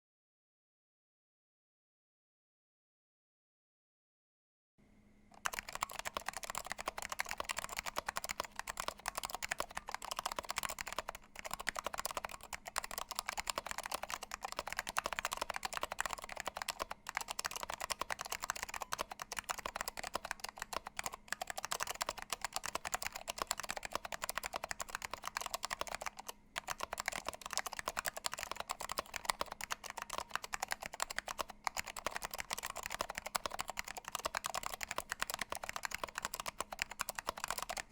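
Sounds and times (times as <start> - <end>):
typing on mechanical keyboard: 5.4 - 37.9.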